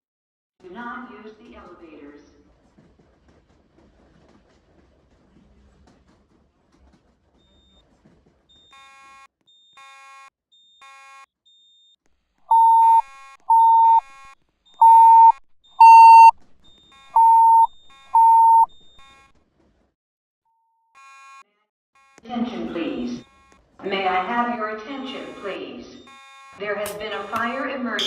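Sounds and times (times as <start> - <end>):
fire alarm beeps: 12.5 - 14.0, 14.8 - 16.3, 17.1 - 18.8.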